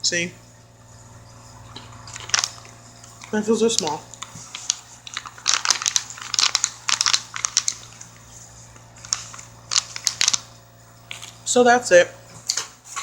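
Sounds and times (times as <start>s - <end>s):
snack bag crinkling: 1.8s - 11.4s.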